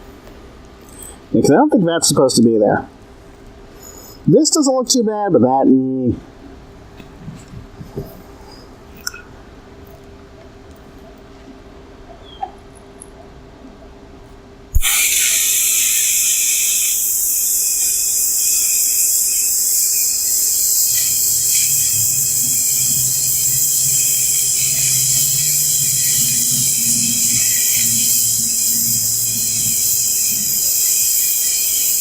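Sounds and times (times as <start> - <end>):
welding arc hissing: 14.7 - 32.0
low hum: 20.0 - 30.8.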